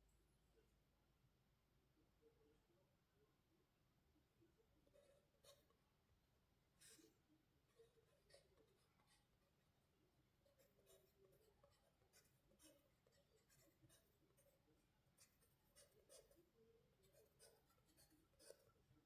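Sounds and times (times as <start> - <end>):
faint scratching: 4.5 - 5.9, 6.7 - 19.0.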